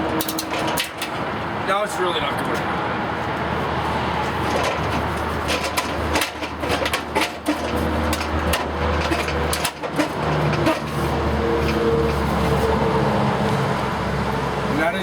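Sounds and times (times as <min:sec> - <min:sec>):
hardware clicks and knocks: 0:00.0 - 0:01.3, 0:04.4 - 0:11.0
low traffic hum: 0:00.0 - 0:15.0.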